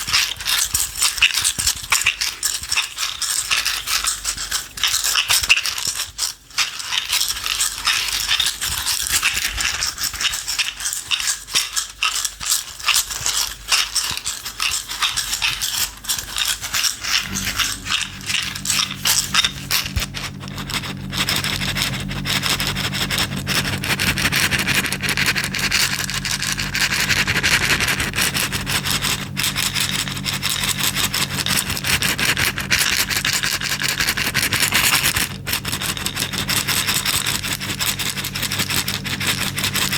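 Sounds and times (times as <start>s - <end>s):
small objects rattling in a container: 0.0s - 39.9s
low steady hum: 16.9s - 39.9s.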